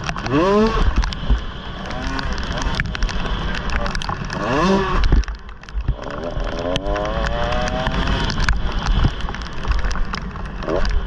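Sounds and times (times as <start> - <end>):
motorcycle engine revving: 0.0 - 9.2
wind rumble on microphone: 0.0 - 11.0.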